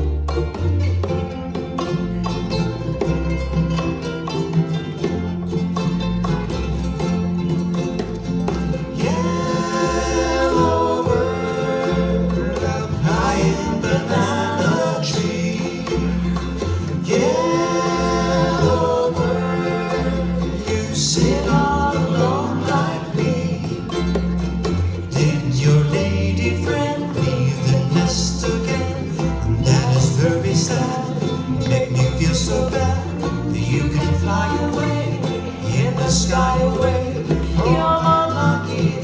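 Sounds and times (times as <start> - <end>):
pulsing bass line: 0.0 - 39.0
ukulele ensemble strumming: 0.0 - 39.0
people singing: 8.7 - 39.0.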